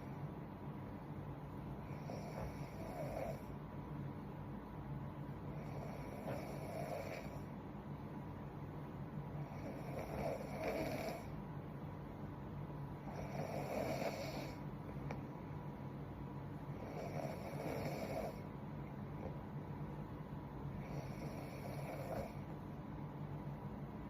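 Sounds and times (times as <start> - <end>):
woman snoring: 1.8 - 3.5, 5.5 - 7.5, 9.4 - 11.4, 13.0 - 14.6, 16.7 - 18.5, 20.8 - 22.5.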